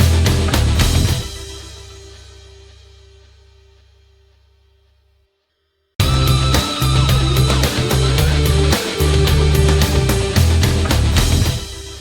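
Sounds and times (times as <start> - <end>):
rock music with drum hits: 0.0 - 3.2, 6.0 - 12.0.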